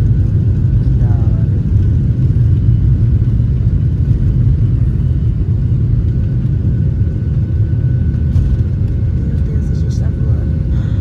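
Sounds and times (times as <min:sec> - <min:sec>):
jet engine cabin rumble: 0:00.0 - 0:11.0.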